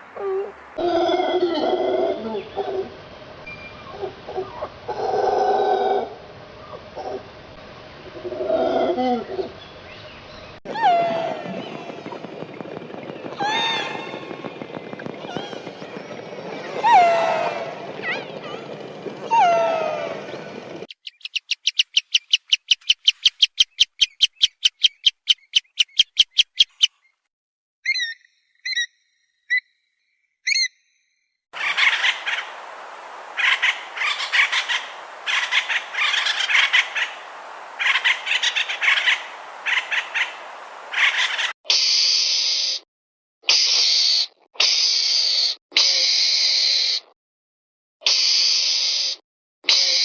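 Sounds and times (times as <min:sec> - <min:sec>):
noisy animal calls: 0:10.7 - 0:20.9, 0:31.6 - 0:41.5
fast series of animal chirps: 0:20.9 - 0:27.2, 0:27.8 - 0:29.8, 0:30.4 - 0:30.8.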